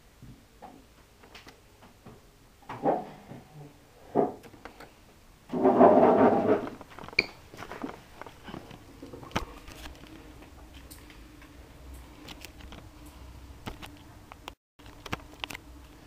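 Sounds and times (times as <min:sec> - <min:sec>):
faint steady hum: 0:06.2 - 0:16.0.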